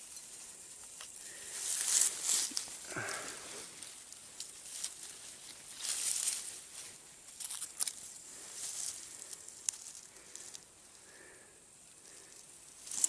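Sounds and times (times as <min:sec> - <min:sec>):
footsteps through dry undergrowth: 0:00.0 - 0:10.6
twigs snapping: 0:07.4 - 0:08.1.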